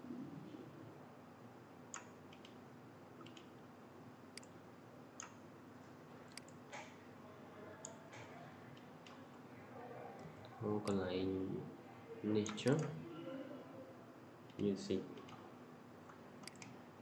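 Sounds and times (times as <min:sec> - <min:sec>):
computer mouse clicks: 0:01.9 - 0:02.6, 0:03.2 - 0:03.6, 0:04.4 - 0:04.6, 0:05.2 - 0:05.4, 0:06.3 - 0:07.0, 0:07.8 - 0:09.2, 0:15.2 - 0:16.8.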